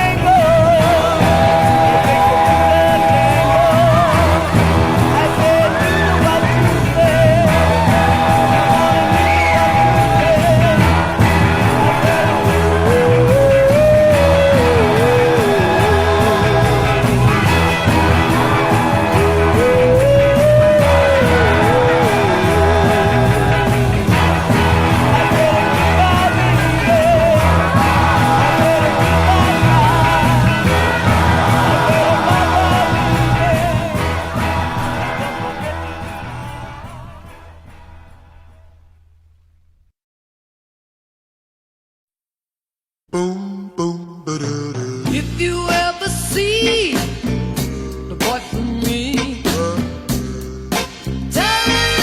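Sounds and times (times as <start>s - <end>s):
soul record playing: 0.0s - 38.6s
instrumental soul record: 44.7s - 52.0s.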